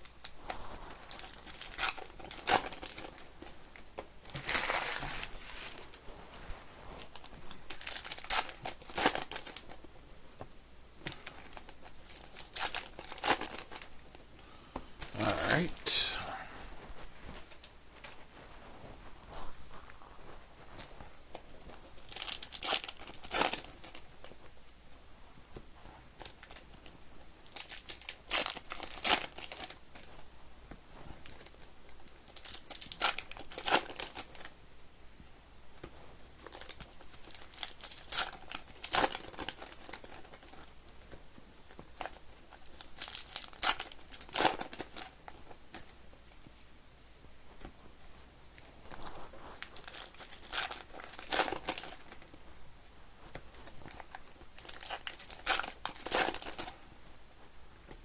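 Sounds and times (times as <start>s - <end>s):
wrappers torn and crinkled: 0.9s - 3.2s, 4.3s - 6.0s, 7.0s - 9.7s, 11.2s - 13.9s, 22.0s - 24.1s, 27.5s - 30.1s, 32.2s - 34.5s, 36.4s - 40.6s, 42.8s - 45.9s, 49.6s - 52.2s, 53.6s - 56.8s.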